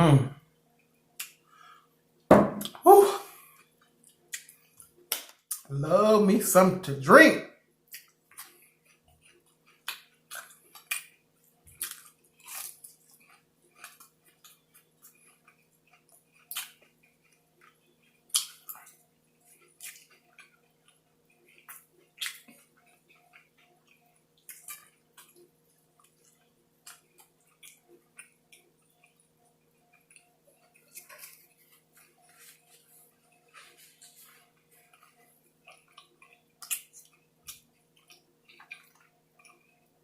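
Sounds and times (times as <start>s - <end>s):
person chewing food: 0.8s - 1.9s, 2.5s - 5.7s, 7.8s - 40.0s
wet mouth clicks and smacks: 1.2s - 1.4s, 4.0s - 5.7s, 7.9s - 12.8s, 18.3s - 19.0s, 21.6s - 25.4s, 34.9s - 39.7s.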